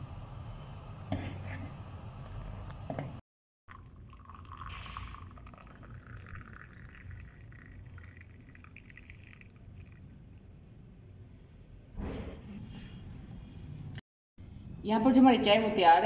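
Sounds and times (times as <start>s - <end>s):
tea pouring in a stream: 3.7s - 10.4s.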